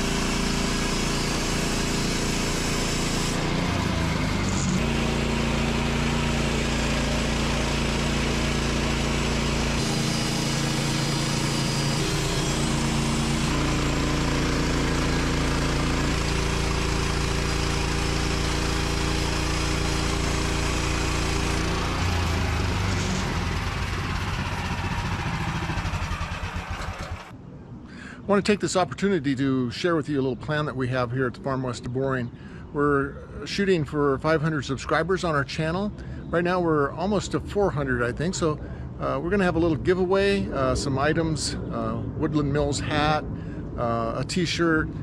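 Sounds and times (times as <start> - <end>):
petrol engine running under load: 0.0 - 27.3
saw blade cutting log: 0.0 - 27.3.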